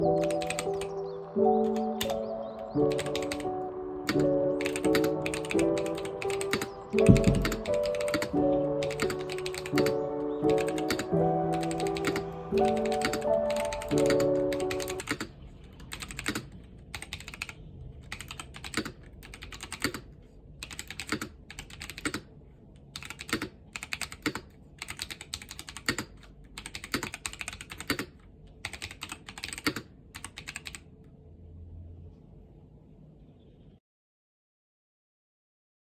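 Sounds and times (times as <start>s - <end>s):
music: 0.0s - 15.0s
mechanical keyboard typing: 0.2s - 0.9s, 1.6s - 2.2s, 2.8s - 22.3s, 22.9s - 30.9s.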